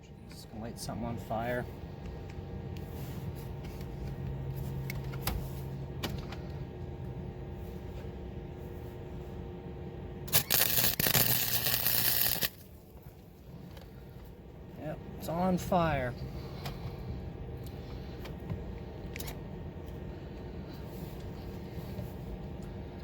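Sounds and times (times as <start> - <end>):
electric welder humming: 10.2 - 13.0
welding arc crackle: 10.3 - 12.8.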